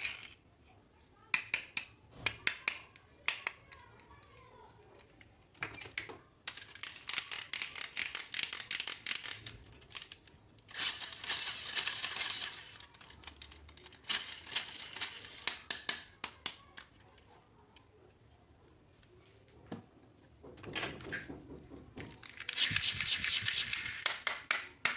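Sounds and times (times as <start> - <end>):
packaging crackling clicks: 6.5 - 16.9.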